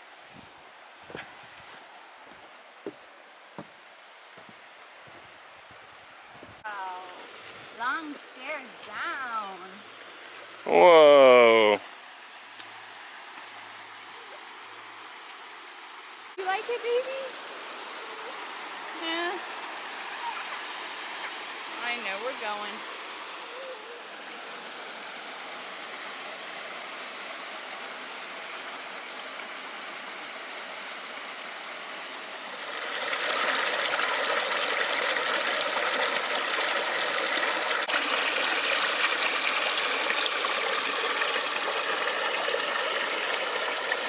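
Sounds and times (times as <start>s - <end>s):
creek and waterfall rushing: 0.0s - 44.0s.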